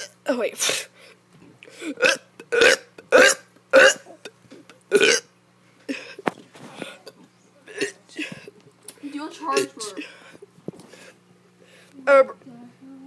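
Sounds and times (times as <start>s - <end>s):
child burping: 1.8s - 5.3s, 7.7s - 8.3s, 9.5s - 10.2s.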